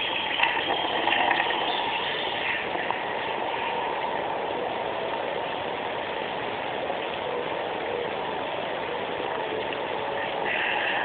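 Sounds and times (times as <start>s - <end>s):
running water from a tap: 0.0s - 4.1s.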